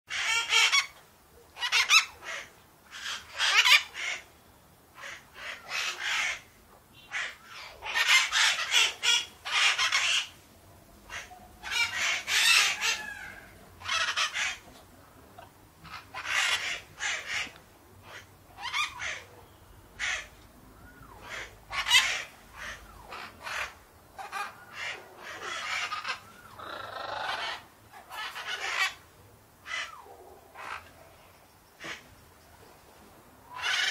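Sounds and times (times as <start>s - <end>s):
parakeets chirping and squawking: 1.6s - 4.2s, 7.1s - 10.4s, 11.1s - 14.7s, 15.4s - 19.2s, 21.2s - 29.0s.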